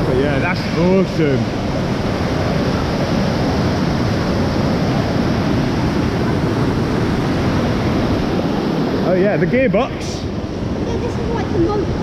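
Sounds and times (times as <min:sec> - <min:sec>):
floodwater rushing through sluice: 0:00.0 - 0:12.0.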